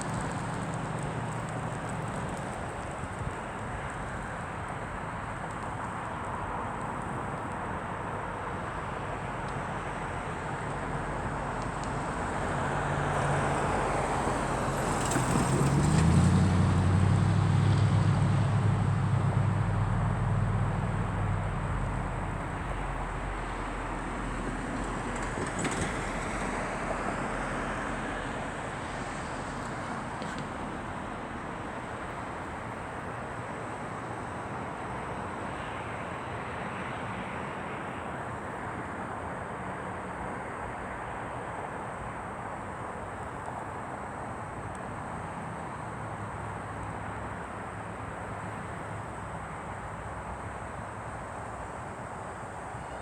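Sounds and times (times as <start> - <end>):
outdoor rumble and hiss: 0.0 - 53.0
vehicle passing by: 12.6 - 23.2.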